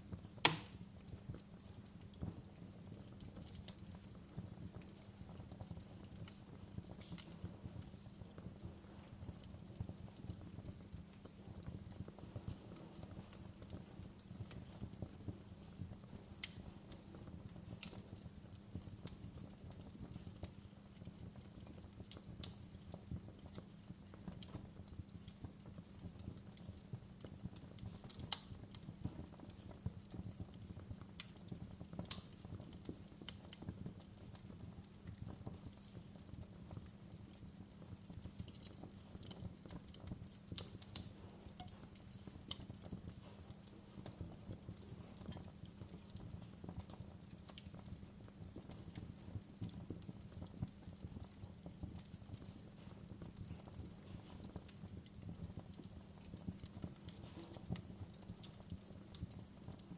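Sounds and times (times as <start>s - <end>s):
fire crackling: 0.0s - 59.9s
sharp fire pops: 0.1s - 1.4s, 32.0s - 33.8s.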